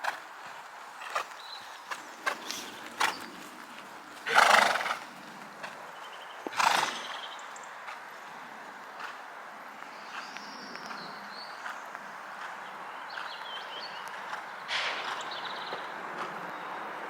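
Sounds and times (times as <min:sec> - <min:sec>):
horse snorting: 0:02.2 - 0:05.7, 0:06.5 - 0:07.3.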